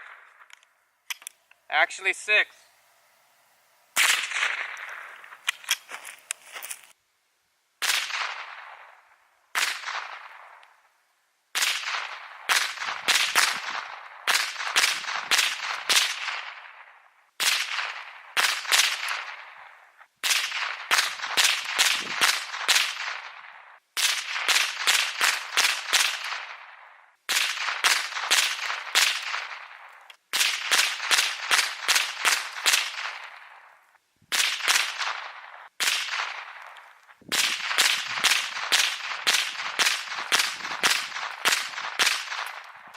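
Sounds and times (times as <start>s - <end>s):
rifle firing rapid shots: 4.0s - 5.9s, 7.8s - 9.0s, 11.6s - 33.7s, 34.3s - 36.7s, 37.3s - 42.9s.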